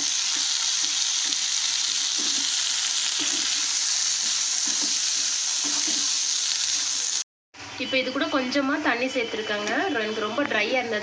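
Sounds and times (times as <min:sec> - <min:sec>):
vegetables sizzling in a pan: 0:00.0 - 0:07.2.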